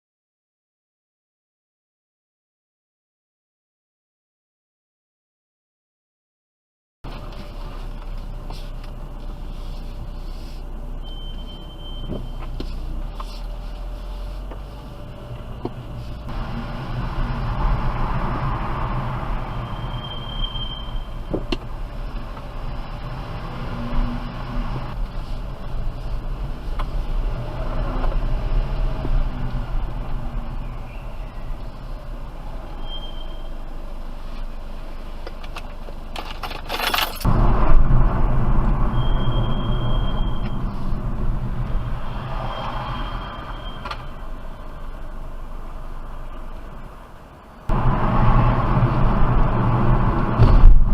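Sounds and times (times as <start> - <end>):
car road and running noise: 7.0 - 50.9
car brakes squealing: 11.0 - 13.5, 19.3 - 21.4, 32.6 - 33.7, 38.8 - 41.0, 42.0 - 44.4.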